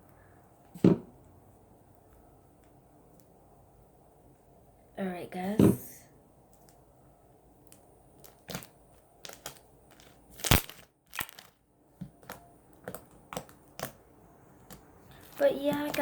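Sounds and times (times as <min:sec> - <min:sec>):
foam slime crunching and popping: 0:07.6 - 0:14.0, 0:14.6 - 0:16.0.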